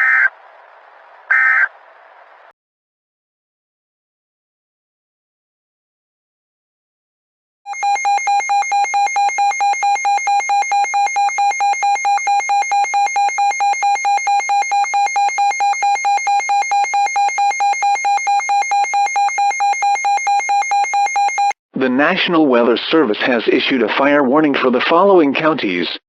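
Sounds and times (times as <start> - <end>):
harsh buzzy pulsing beep: 7.7 - 21.6.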